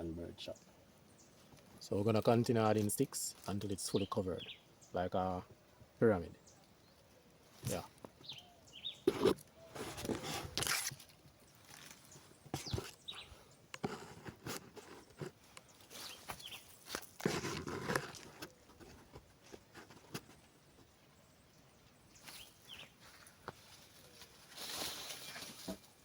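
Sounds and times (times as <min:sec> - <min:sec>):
rustling clatter of sticks: 0:09.1 - 0:20.4, 0:23.0 - 0:26.0.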